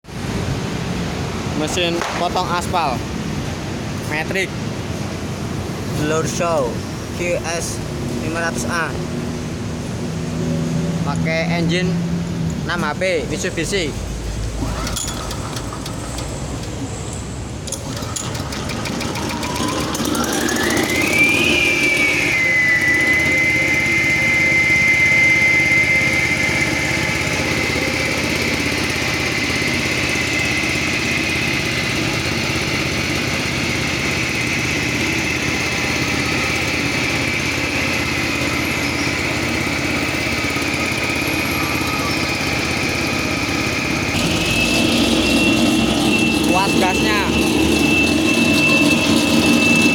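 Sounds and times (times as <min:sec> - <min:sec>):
concrete saw engine running: 0:00.1 - 0:49.9
high-pitched blade whine: 0:05.8 - 0:14.0, 0:19.0 - 0:49.9.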